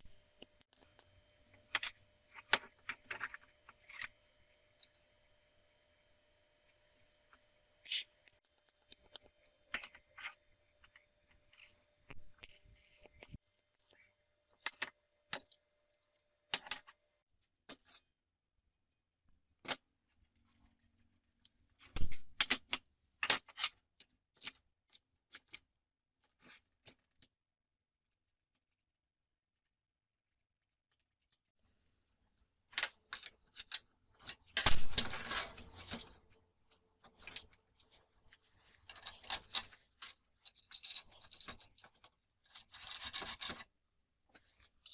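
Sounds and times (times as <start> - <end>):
metal parts clinking: 7.8 - 8.1, 32.8 - 36.3, 37.0 - 43.6.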